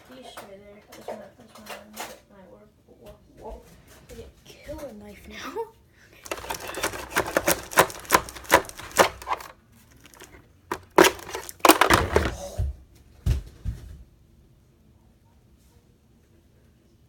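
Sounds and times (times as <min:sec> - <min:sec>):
knife cutting plastic packaging: 0:06.2 - 0:12.4
scraping: 0:06.2 - 0:12.5
dull thumps of package: 0:06.2 - 0:12.6.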